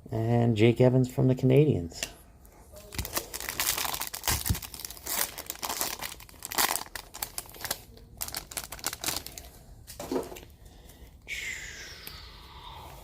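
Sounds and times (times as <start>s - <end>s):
foil wrapper crinkling and tearing: 2.8s - 9.6s.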